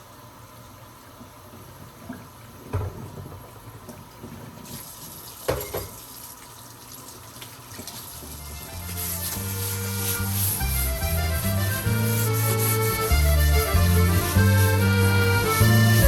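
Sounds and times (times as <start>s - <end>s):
tap water running into sink: 1.9s - 9.4s.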